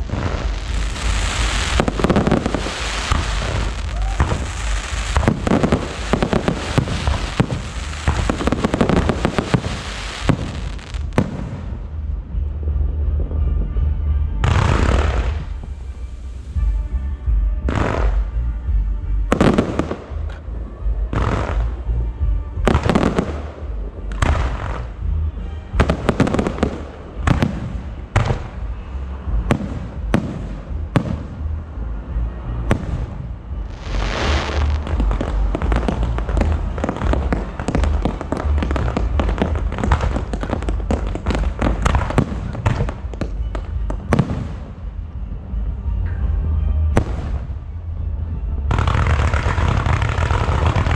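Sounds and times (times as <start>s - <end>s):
fireworks bangs: 0.0s - 11.8s, 14.4s - 15.9s, 17.6s - 18.4s, 25.8s - 31.6s, 32.7s - 44.8s, 48.7s - 50.9s
hissing crackling firework trails: 0.0s - 11.8s, 32.9s - 44.8s, 48.7s - 50.9s.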